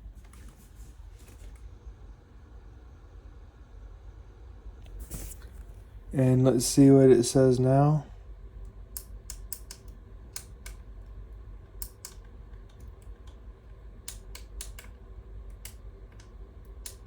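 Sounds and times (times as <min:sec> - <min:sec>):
low steady hum: 0:00.0 - 0:17.0
sharp clicks and ticks: 0:08.6 - 0:10.8, 0:11.8 - 0:13.4, 0:14.0 - 0:17.0.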